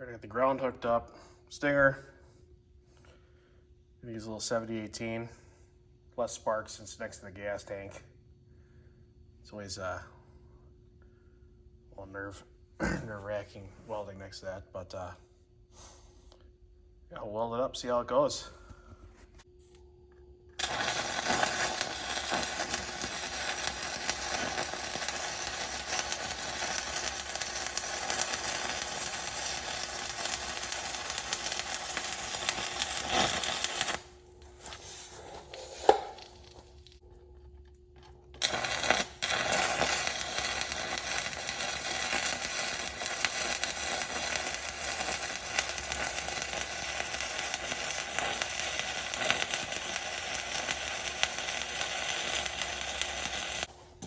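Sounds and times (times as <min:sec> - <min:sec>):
welding arc crackling and sizzling: 0:20.6 - 0:37.0, 0:38.3 - 0:53.8.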